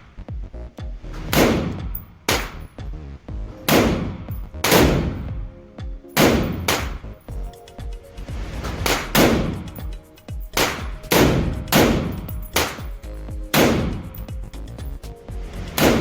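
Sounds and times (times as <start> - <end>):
rifle shots with ringing echo: 1.3 - 2.7, 3.7 - 5.3, 6.2 - 7.0, 10.6 - 13.0, 13.6 - 14.3, 15.8 - 16.0.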